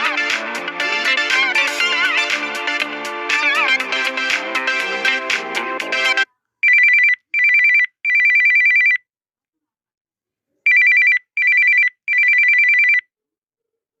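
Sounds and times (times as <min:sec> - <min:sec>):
two-tone warbling phone ringtone: 0:10.7 - 0:13.0.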